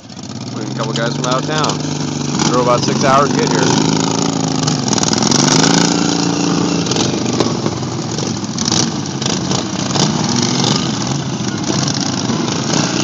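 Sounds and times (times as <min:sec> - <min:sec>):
racing lawn mower engines: 0:00.0 - 0:13.0.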